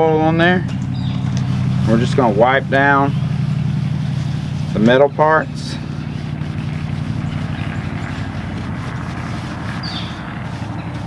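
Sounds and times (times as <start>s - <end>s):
low motor drone: 0.0s - 11.0s.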